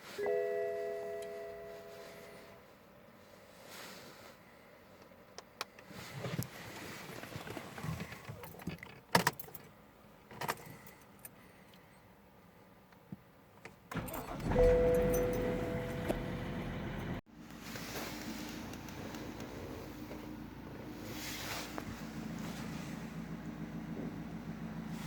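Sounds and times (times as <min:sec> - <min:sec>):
diesel engine running: 0:13.9 - 0:25.0.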